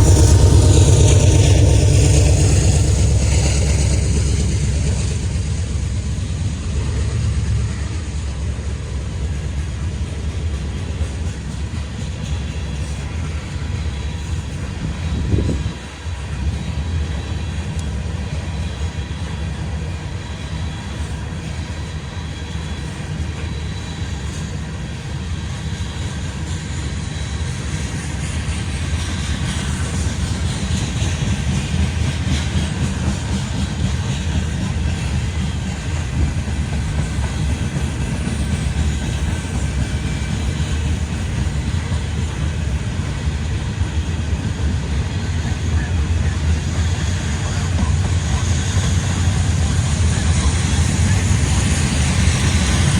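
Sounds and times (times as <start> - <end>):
train wheels rumbling on rail: 0.0 - 52.9
hiss: 16.1 - 52.9.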